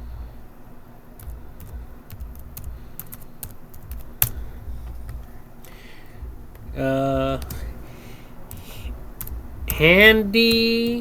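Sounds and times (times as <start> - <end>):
low steady hum: 0.0 - 11.0
keyboard keys clicking: 1.1 - 11.0.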